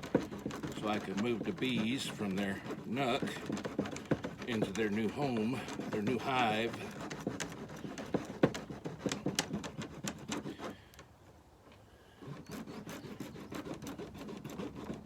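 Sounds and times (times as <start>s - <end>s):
clicks and knocks of plastic frames: 0.0s - 11.1s
scraping and rubbing on plastic: 0.0s - 15.0s.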